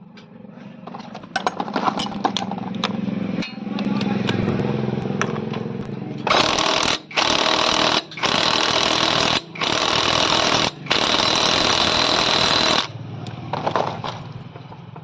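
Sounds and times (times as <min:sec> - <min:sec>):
air tool hissing and rattling: 0:06.3 - 0:12.9.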